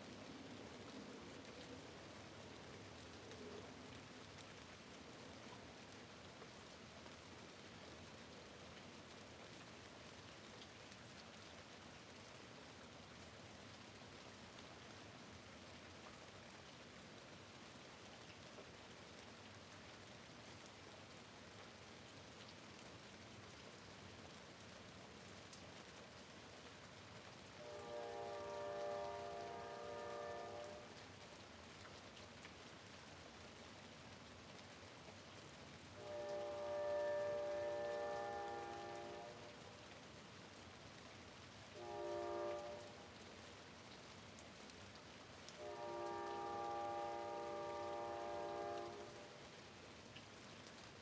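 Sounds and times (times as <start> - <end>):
rain on a window: 0.0 - 51.0.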